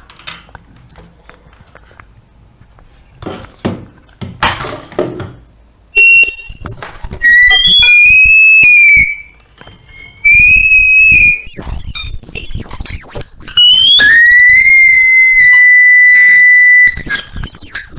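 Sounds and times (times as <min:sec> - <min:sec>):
microphone feedback squeal: 0:06.0 - 0:17.9.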